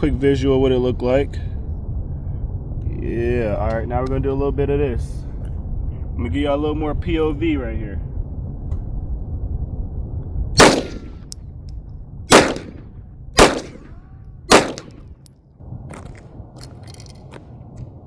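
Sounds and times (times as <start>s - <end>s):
low rumble: 0.0s - 18.0s
pistol shots with ringing tail: 10.6s - 11.4s, 12.3s - 15.3s.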